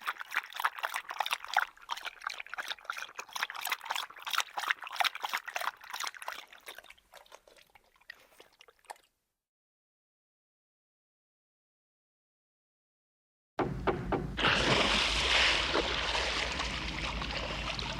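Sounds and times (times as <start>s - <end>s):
water trickling: 0.0s - 9.1s, 14.4s - 17.9s.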